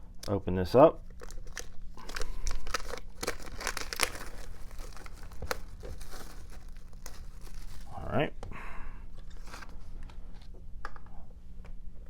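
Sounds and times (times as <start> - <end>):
packaging tearing and crinkling: 1.0 - 8.1, 9.3 - 9.8.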